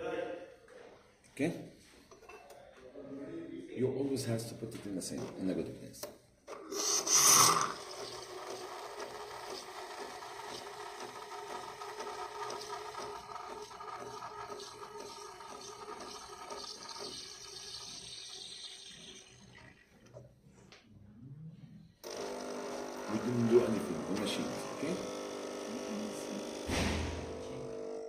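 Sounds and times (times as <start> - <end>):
coffee machine pump pulsing: 6.5 - 20.2, 22.0 - 28.0
liquid running into a cup: 6.6 - 20.3, 22.0 - 28.0
coffee machine steam hiss: 6.7 - 8.2.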